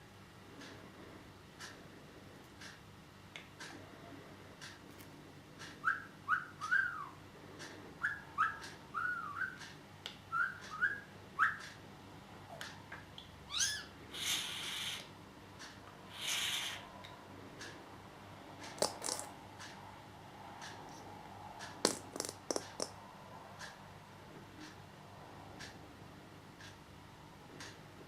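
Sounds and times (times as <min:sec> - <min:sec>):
budgerigar whistling: 0:05.8 - 0:07.2, 0:08.0 - 0:09.6, 0:13.5 - 0:15.1, 0:16.1 - 0:16.8
budgerigar harsh scratchy call: 0:13.5 - 0:15.1, 0:16.1 - 0:16.9.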